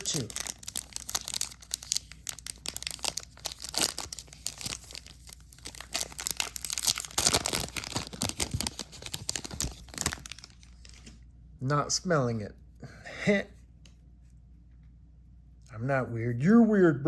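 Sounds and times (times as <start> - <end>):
foil wrapper crinkling and tearing: 0.0 - 11.2.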